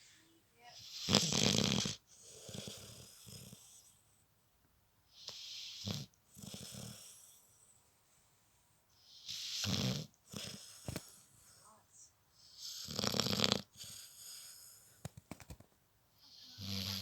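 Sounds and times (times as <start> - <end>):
soft breath: 0.0 - 0.6, 10.5 - 12.6, 13.8 - 15.2
person snoring: 16.3 - 17.0.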